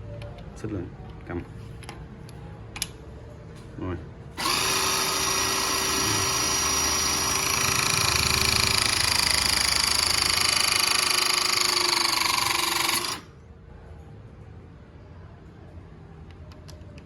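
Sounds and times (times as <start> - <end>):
hydraulic crimping tool motor: 4.4 - 13.3.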